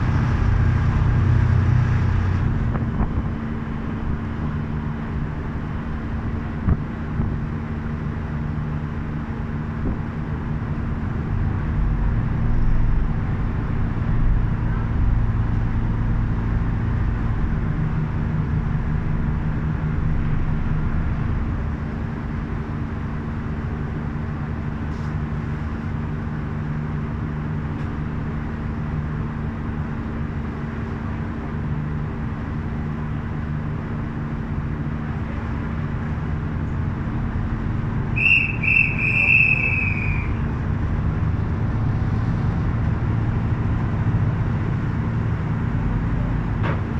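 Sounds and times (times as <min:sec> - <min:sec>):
wind rumbling on microphone: 0:00.0 - 0:22.5
steady low hum: 0:00.0 - 0:46.9.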